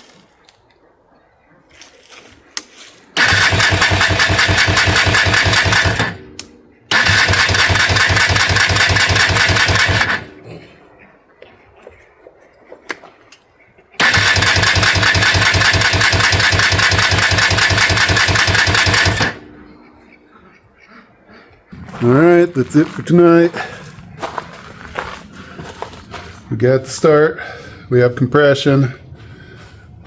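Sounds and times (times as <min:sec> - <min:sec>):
atv engine cranking on starter: 0:03.2 - 0:10.4, 0:14.0 - 0:19.6.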